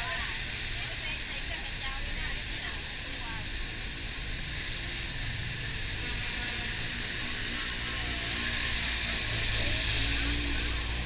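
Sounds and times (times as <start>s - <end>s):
low engine rumble: 0.0s - 11.0s
tyres hissing on wet road: 0.0s - 11.0s.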